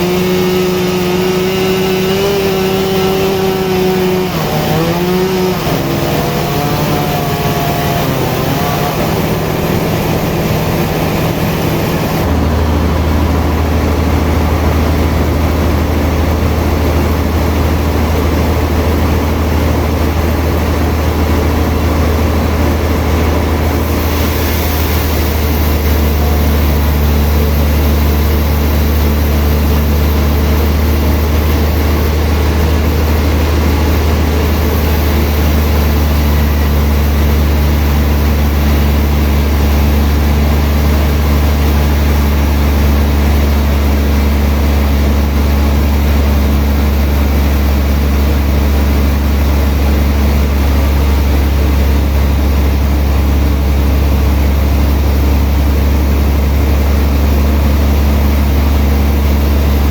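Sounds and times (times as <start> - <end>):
deep loud hum: 0.0 - 59.9
sawmill machinery running: 0.0 - 59.9.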